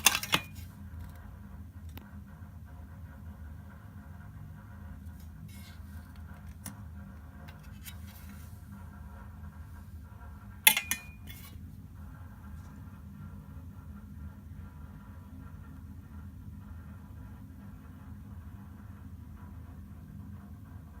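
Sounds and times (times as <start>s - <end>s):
sharp metallic typewriter clacks: 10.7s - 11.4s.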